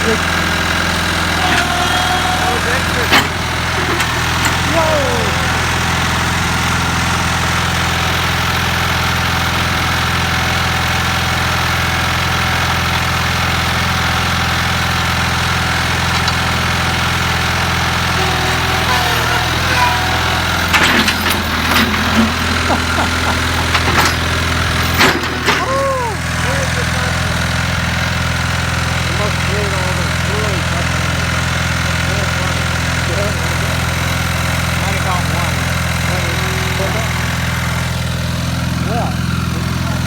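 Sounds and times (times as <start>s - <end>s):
sharp clanks and knocks: 0.0s - 6.8s, 15.6s - 25.8s
tractor engine idling: 0.0s - 40.0s.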